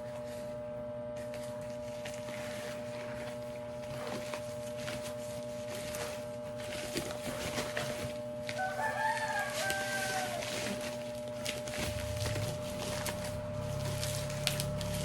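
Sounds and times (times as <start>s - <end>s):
rooster crowing: 8.4s - 11.0s.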